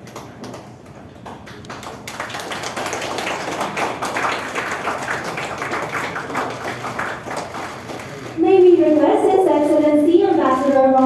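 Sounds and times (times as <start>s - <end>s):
audience applause: 0.0s - 8.4s.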